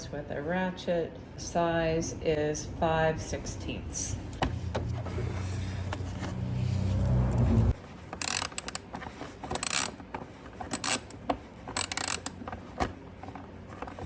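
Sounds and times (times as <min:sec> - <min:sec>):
steady low hum: 0:00.0 - 0:14.0
ratchet wrench clicking: 0:08.2 - 0:08.8, 0:09.6 - 0:10.0, 0:10.7 - 0:12.4.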